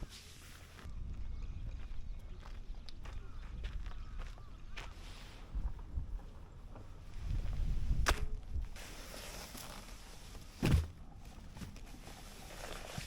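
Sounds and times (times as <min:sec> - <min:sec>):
camping gear rustling: 0:07.2 - 0:13.0.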